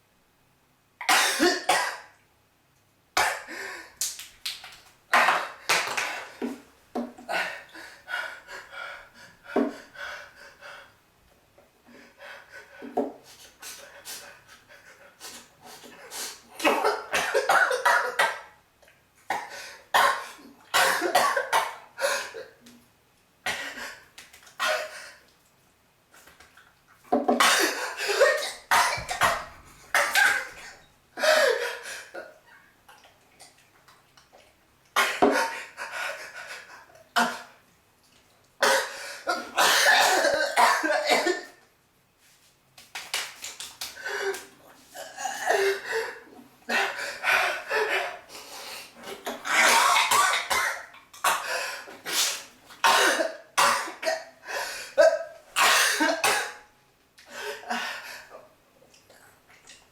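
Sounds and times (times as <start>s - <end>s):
person coughing: 1.0s - 2.1s, 16.6s - 18.5s, 19.3s - 22.6s, 27.3s - 32.3s, 35.0s - 35.8s, 38.6s - 41.6s, 52.8s - 54.3s, 55.0s - 56.6s
person sneezing: 38.6s - 41.6s, 46.7s - 56.6s.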